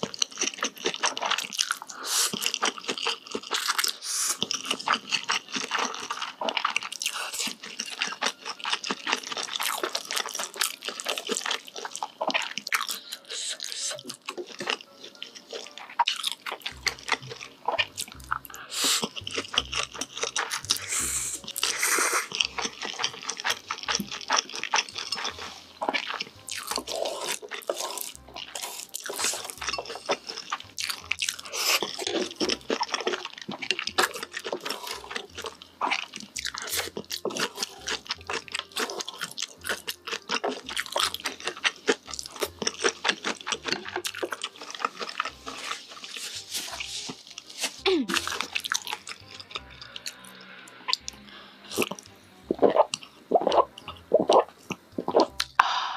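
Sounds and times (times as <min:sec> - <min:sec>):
mouth clicks and crackles: 0:00.0 - 0:55.8
wet chewing and slurping noodles: 0:00.0 - 0:55.8.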